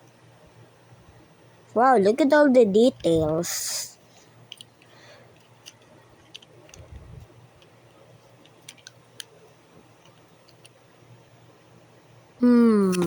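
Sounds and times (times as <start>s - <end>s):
plastic toys clicking and tapping: 4.5s - 6.8s, 8.4s - 9.3s.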